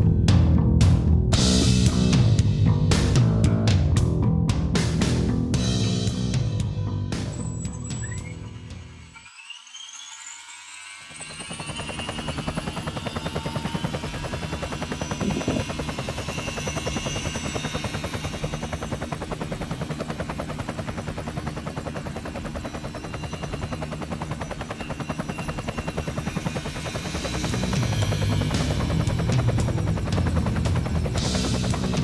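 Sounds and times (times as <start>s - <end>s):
high motor whine: 5.6s - 32.0s
model helicopter rotor chop: 9.0s - 32.0s.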